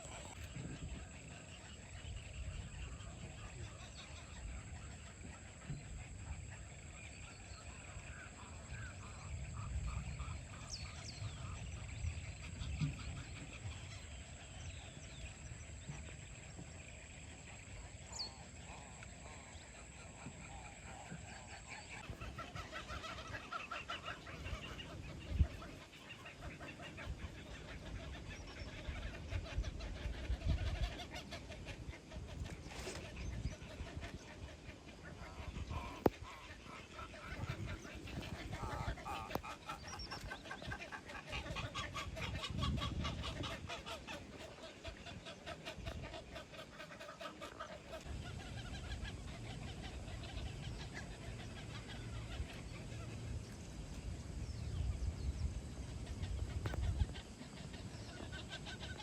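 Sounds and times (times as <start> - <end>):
birds calling: 0.0 - 59.0
birds chattering: 34.8 - 53.7.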